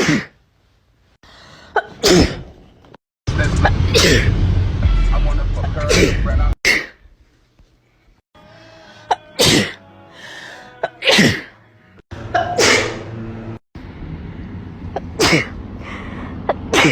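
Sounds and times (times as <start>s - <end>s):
person sneezing: 0.0s - 0.4s, 1.8s - 2.5s, 5.9s - 7.0s, 9.1s - 9.8s, 10.8s - 11.6s, 12.3s - 13.0s, 15.0s - 15.6s, 16.7s - 16.9s.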